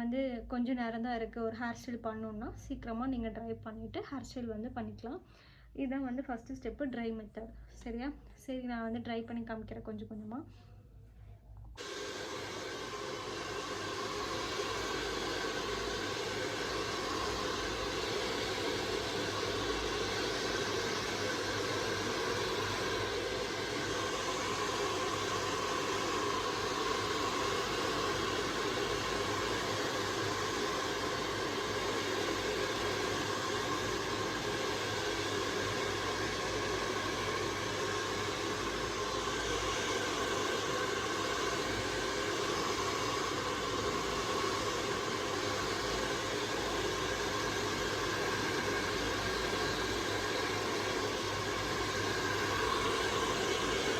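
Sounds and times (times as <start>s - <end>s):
hair dryer blowing: 11.8s - 53.9s.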